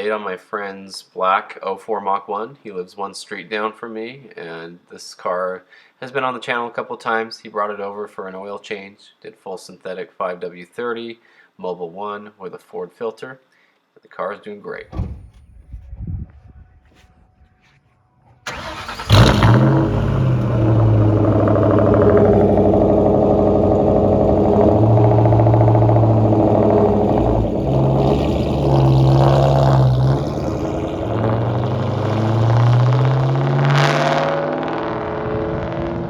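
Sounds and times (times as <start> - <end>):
car engine starting and idling: 14.9 - 15.6, 18.3 - 36.0.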